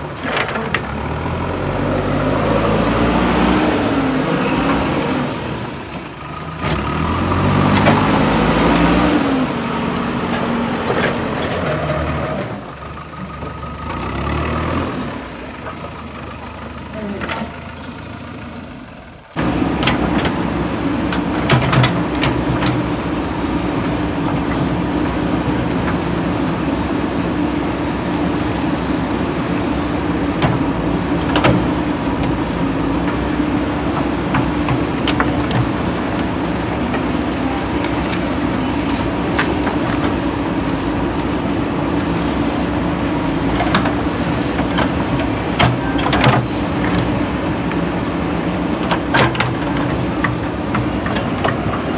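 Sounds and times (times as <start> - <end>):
diesel engine running: 0.0 - 51.9
machine clanks and knocks: 19.4 - 23.0, 33.9 - 37.2, 43.4 - 47.3, 48.8 - 51.9.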